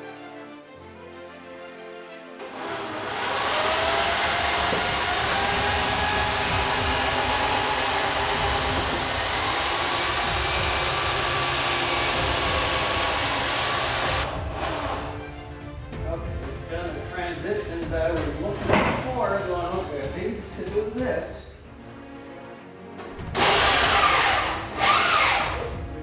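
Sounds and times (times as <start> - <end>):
motor-driven blower whirring: 2.4 - 15.6, 23.2 - 25.7.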